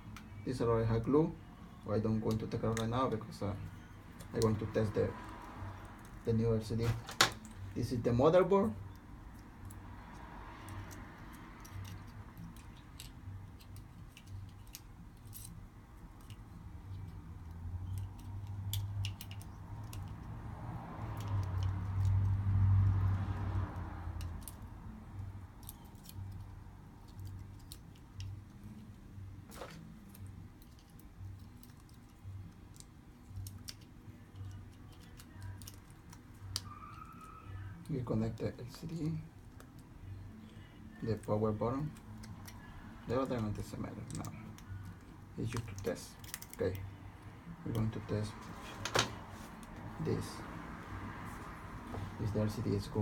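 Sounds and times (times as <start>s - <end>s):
small parts and tools clicking: 8.8s - 49.8s
small clicks and taps of tools: 16.2s - 20.4s, 21.1s - 22.9s.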